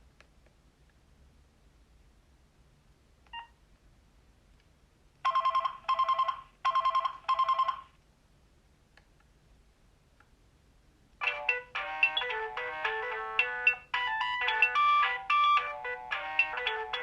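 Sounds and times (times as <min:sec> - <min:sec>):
phone ringtone beep: 0:05.3 - 0:07.9, 0:11.2 - 0:17.0
phone trilling rings: 0:05.3 - 0:07.9, 0:11.2 - 0:17.0.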